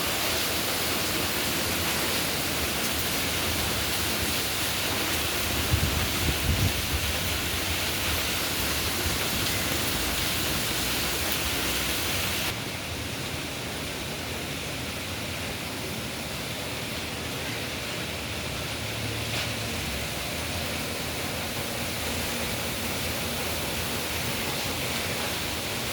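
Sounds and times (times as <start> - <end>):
steady rain falling: 0.0 - 25.9.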